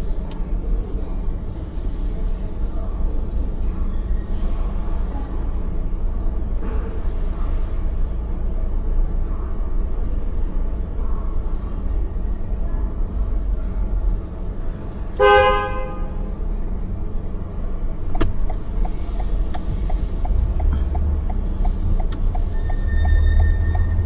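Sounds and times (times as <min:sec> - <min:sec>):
road and engine rumble: 0:00.0 - 0:24.0
car horn honk: 0:15.2 - 0:16.2
regular ticking: 0:18.0 - 0:24.0.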